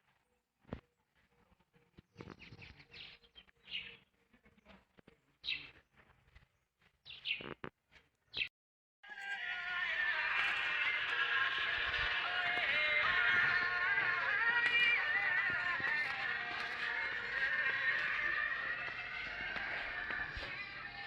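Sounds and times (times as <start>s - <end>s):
music: 9.1s - 21.0s
birds chirping: 9.4s - 21.0s.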